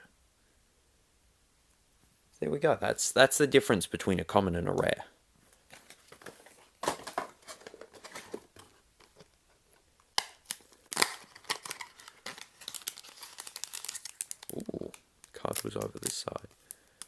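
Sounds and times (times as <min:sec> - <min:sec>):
plastic packaging crinkling and tearing: 0:05.7 - 0:17.0.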